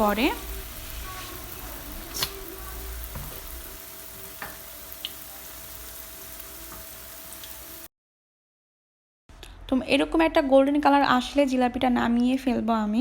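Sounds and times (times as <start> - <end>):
batter sizzling in hot oil: 0.0 - 7.9.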